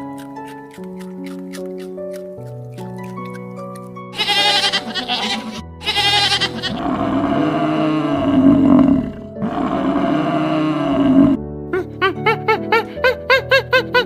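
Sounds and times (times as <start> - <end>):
background music: 0.0 - 14.0
shaky bleats: 4.2 - 6.8
drawn-out animal call: 4.2 - 9.0.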